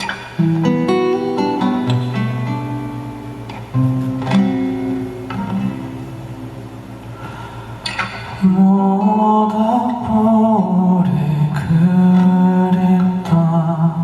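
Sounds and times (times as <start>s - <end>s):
man singing slow melody: 8.4s - 14.0s.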